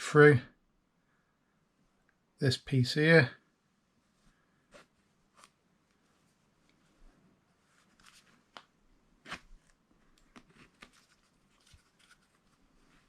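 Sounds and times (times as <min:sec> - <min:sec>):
rustling: 0:04.0 - 0:13.0.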